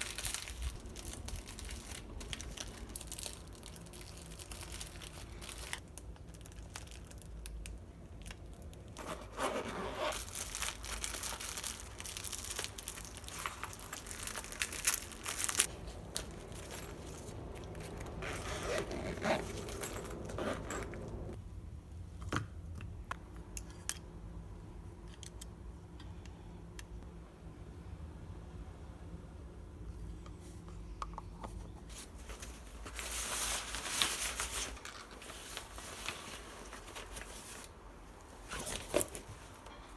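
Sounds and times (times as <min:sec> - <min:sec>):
wrapper crinkling and tearing: 0:00.0 - 0:21.3, 0:32.2 - 0:37.8.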